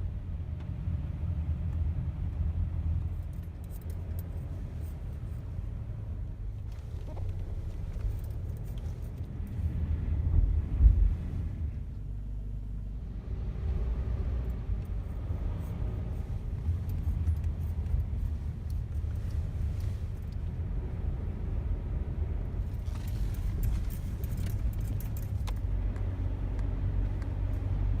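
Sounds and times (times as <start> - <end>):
car rumble from inside cabin: 0.0 - 28.0
light clicking and rattling: 6.5 - 9.6, 14.8 - 20.6, 22.6 - 28.0.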